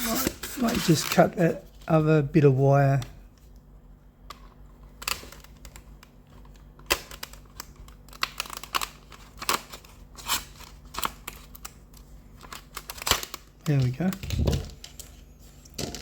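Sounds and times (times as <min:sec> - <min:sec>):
hard plastic packaging rattling: 0:12.3 - 0:15.1.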